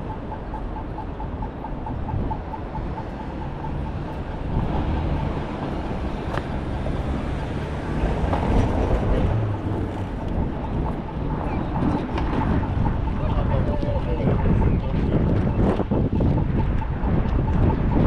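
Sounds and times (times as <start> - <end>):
rapid beeping: 0.0 - 8.3
heavy vehicle rumbling past: 2.7 - 13.7.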